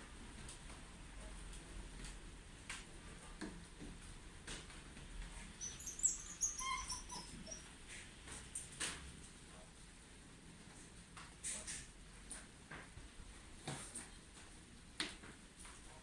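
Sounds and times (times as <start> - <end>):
dog whining: 5.5 - 7.8.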